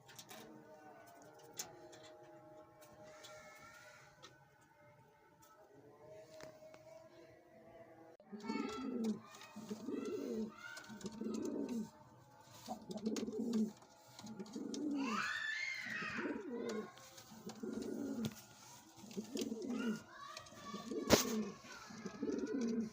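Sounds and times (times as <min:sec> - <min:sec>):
pigeons cooing: 0:08.4 - 0:12.0, 0:12.6 - 0:22.9.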